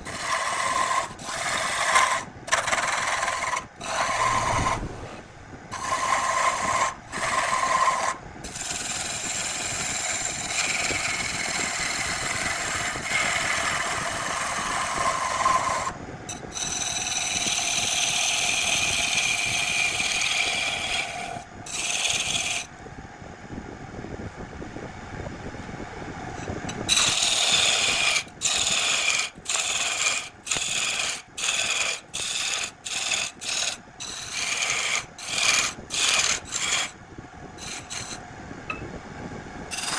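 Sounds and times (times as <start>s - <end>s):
lathe tool cutting wood: 0.0s - 22.7s, 26.9s - 37.0s, 37.6s - 38.2s.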